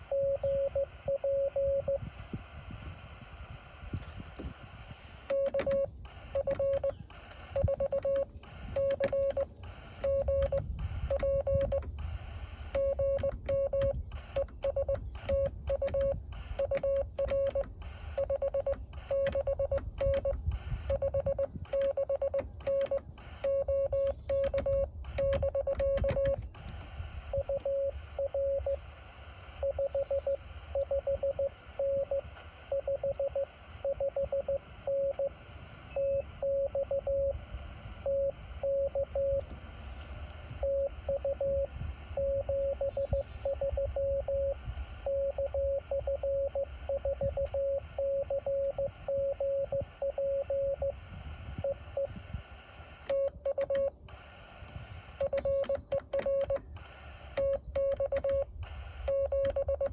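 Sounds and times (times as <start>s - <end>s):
morse code tone: 0.0s - 2.2s, 2.8s - 52.2s, 52.9s - 59.9s
morse key paddle clicking: 12.6s - 27.0s, 53.1s - 56.8s.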